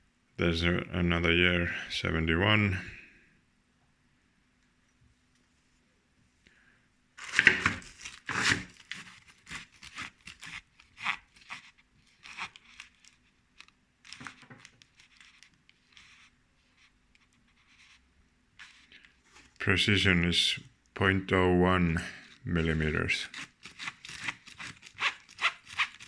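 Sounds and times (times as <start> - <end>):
wrapping tearing: 7.2 - 16.3, 23.2 - 26.0
wrapping crinkling: 7.2 - 18.0, 23.2 - 26.0.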